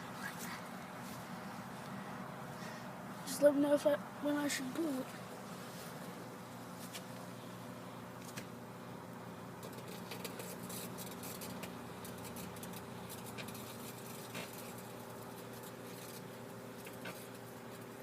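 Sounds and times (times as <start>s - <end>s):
microwave oven humming: 0.0s - 18.0s
faint crackles and ticks: 9.6s - 18.0s.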